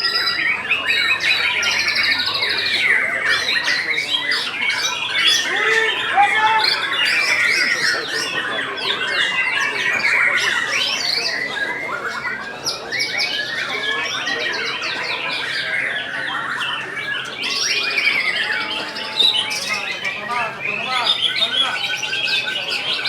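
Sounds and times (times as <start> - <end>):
chorus of songbirds singing: 0.0 - 23.0.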